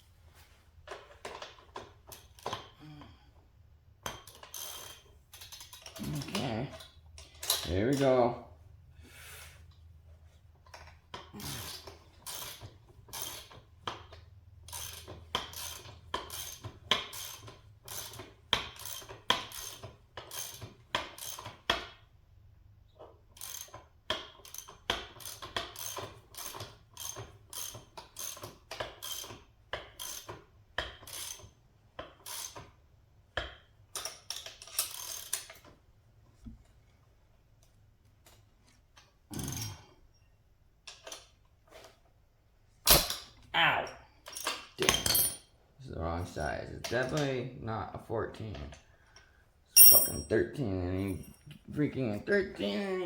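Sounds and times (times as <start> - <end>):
ratchet wrench clicking: 11.6 - 21.6, 23.4 - 28.4, 29.0 - 30.4, 32.2 - 32.6.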